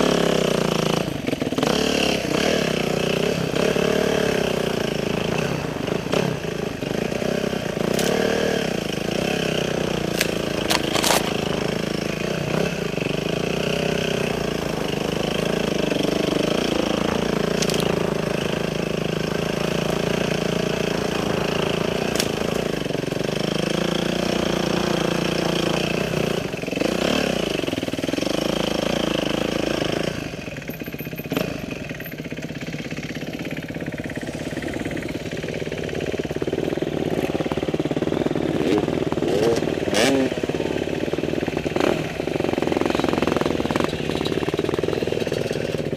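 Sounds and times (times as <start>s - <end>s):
motorcycle engine revving: 0.0s - 45.9s.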